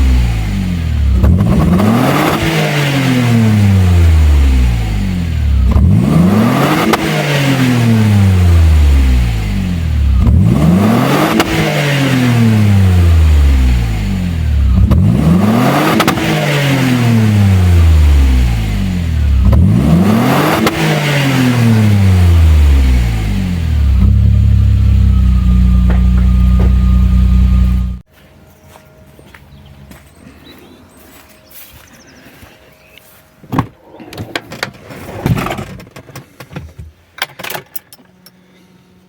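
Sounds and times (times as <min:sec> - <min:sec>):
car engine revving and idling: 0:00.0 - 0:28.1.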